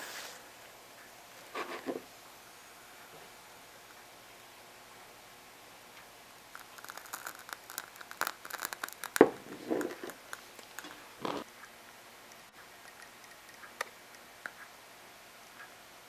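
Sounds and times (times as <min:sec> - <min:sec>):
small clicks and rustles: 0:06.6 - 0:09.2.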